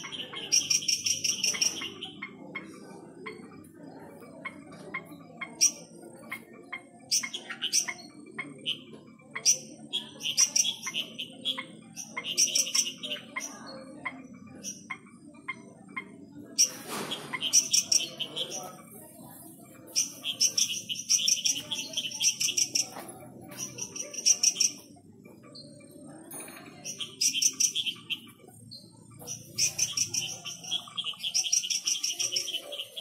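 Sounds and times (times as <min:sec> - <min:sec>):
frogs clicking and chirping: 0:00.0 - 0:33.0.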